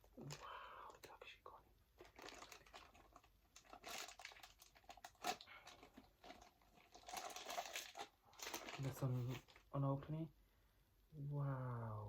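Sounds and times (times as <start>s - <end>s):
packaging rustling and crinkling: 2.0s - 9.8s.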